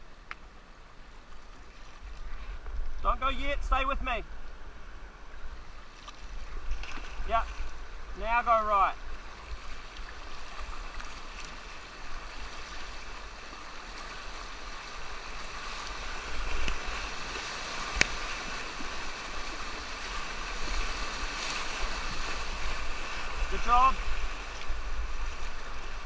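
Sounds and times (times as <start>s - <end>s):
rushing whitewater: 7.2s - 26.0s.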